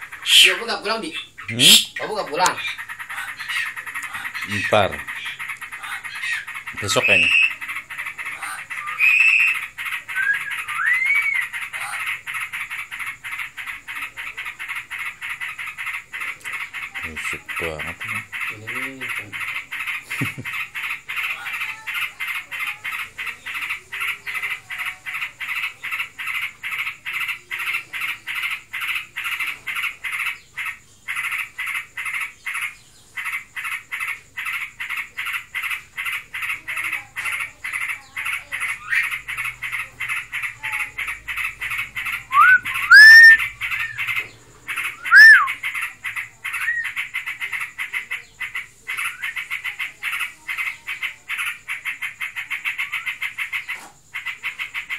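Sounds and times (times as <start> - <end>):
pulsed short calling notes: 1.5 - 2.0, 42.3 - 43.4, 45.0 - 45.5
bird whistling rising notes: 10.2 - 11.4, 42.3 - 44.0, 45.0 - 45.6.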